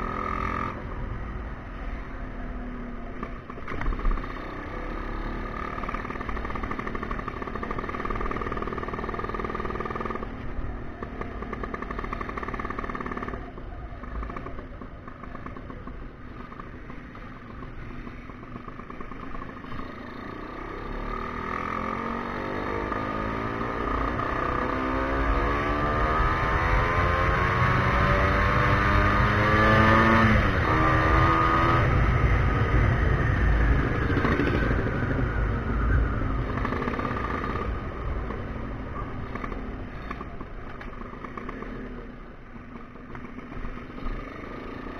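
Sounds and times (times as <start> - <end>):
scooter engine revving: 18.3 - 42.1.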